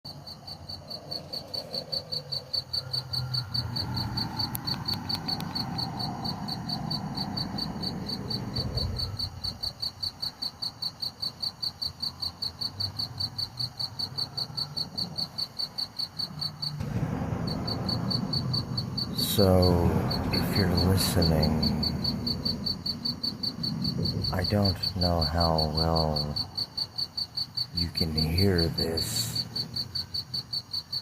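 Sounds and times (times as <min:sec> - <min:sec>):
low background rumble: 0:00.3 - 0:10.2, 0:16.1 - 0:30.5.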